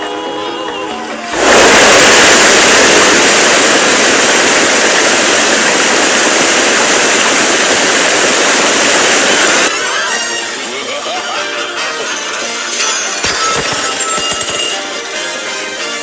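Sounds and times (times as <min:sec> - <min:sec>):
music: 0:00.0 - 0:01.4, 0:09.7 - 0:16.0
cartoon waterfall rushing: 0:01.2 - 0:11.3.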